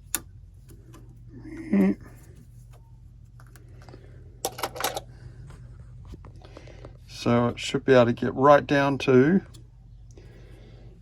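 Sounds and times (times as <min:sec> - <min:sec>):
clicks and knocks of parts: 0:03.4 - 0:05.1.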